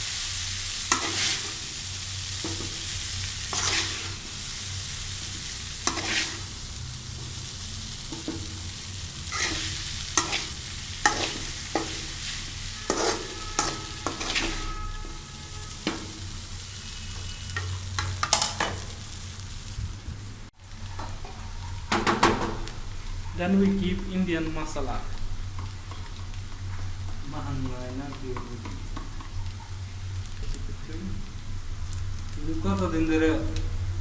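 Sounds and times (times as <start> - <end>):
noodles sizzling in a pan: 0.0 - 34.0
spoon scraping a pan: 0.9 - 1.6, 3.5 - 4.2, 5.8 - 6.5, 9.3 - 19.0.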